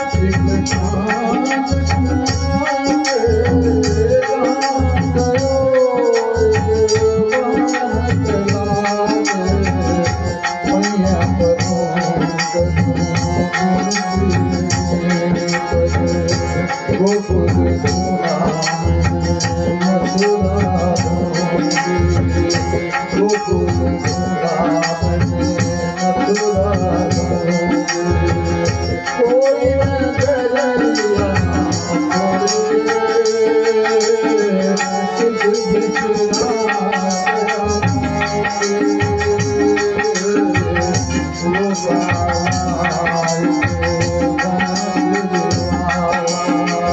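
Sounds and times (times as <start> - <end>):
hand drums and percussion: 0.0 - 46.9
person singing devotional song: 0.0 - 46.9.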